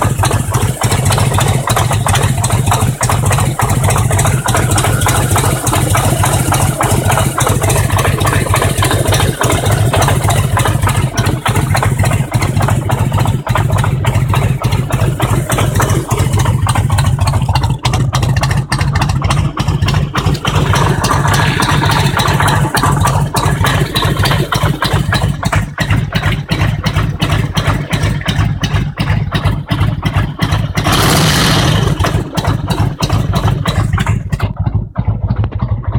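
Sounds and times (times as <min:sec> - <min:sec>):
engine knock: 0:00.0 - 0:35.9
motorcycle engine idling: 0:00.0 - 0:35.9.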